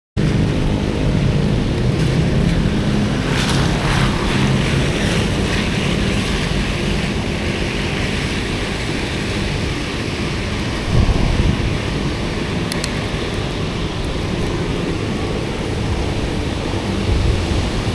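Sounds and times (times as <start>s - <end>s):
bicycle tyres on wet road: 0.2s - 17.9s
wind buffeting microphone: 0.2s - 17.9s.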